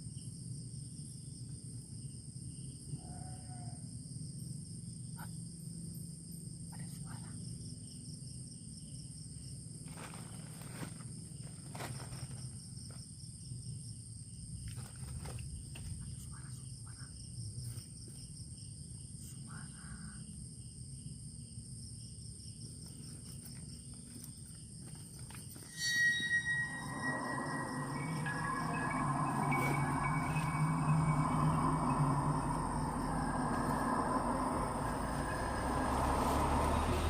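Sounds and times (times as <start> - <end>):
crickets trilling: 0.0 - 37.0
held high tone: 25.7 - 37.0
low rumble: 25.8 - 37.0.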